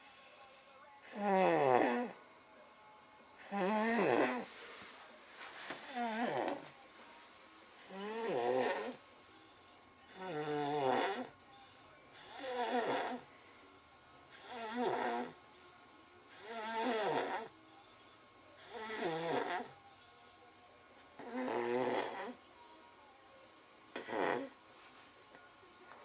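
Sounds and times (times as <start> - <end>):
child snoring: 1.1 - 2.2, 3.4 - 4.6, 5.7 - 6.7, 7.8 - 9.0, 10.1 - 11.4, 12.2 - 13.3, 14.4 - 15.4, 16.4 - 17.5, 18.6 - 19.8, 21.2 - 22.4, 24.0 - 24.6.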